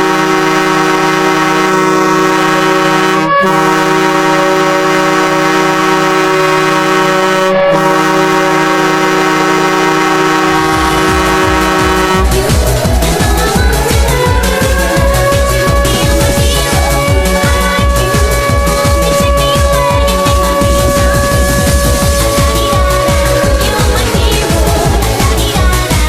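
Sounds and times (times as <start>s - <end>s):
goal horn blasts: 0.0s - 12.5s
electronic dance beat: 9.4s - 26.0s.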